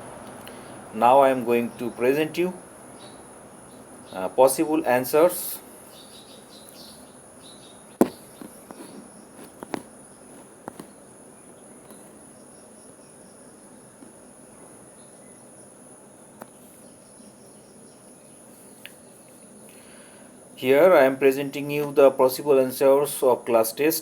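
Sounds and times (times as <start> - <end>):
crickets chirring: 0.0 - 24.0
sharp clicks and knocks: 8.0 - 11.0.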